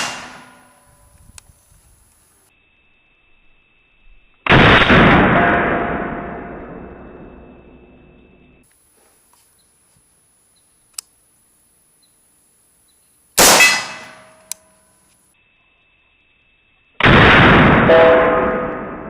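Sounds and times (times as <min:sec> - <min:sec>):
rifle shot: 0:00.0 - 0:00.7, 0:04.5 - 0:06.4, 0:13.4 - 0:14.4, 0:17.0 - 0:19.0.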